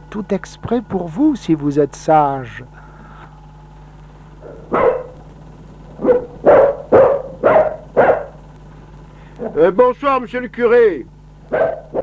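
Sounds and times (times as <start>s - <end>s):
dog barking: 4.4s - 5.2s, 6.0s - 8.4s, 11.5s - 12.0s.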